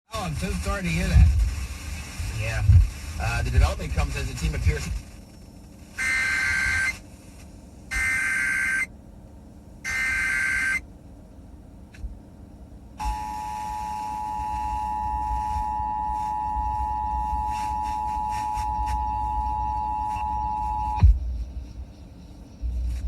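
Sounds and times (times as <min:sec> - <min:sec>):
digital data tone bursts: 0:06.0 - 0:07.0, 0:07.9 - 0:08.9, 0:09.9 - 0:10.8.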